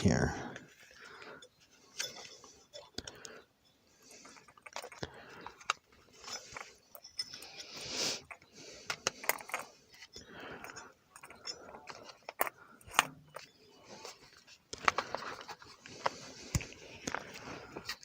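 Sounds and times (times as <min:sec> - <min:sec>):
metal fittings scraping: 0:01.2 - 0:03.3, 0:04.0 - 0:18.0
metal fittings clicking and clinking: 0:04.1 - 0:18.0.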